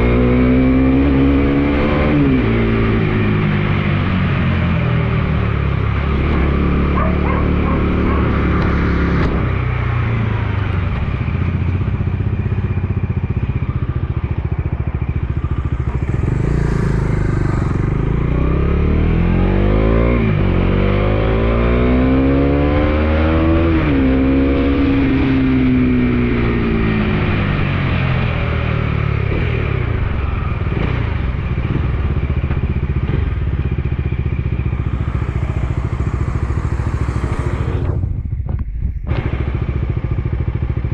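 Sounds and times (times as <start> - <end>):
motorcycle engine revving: 0.0 - 40.9
wind noise: 34.7 - 39.6.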